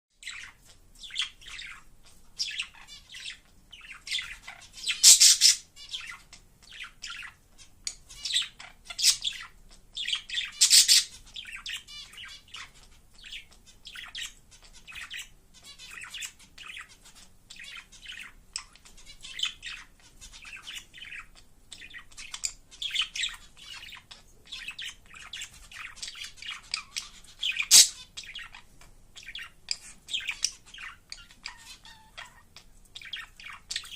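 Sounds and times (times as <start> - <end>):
budgerigar warbling: 4.1 - 6.2, 10.4 - 11.2, 26.4 - 28.6.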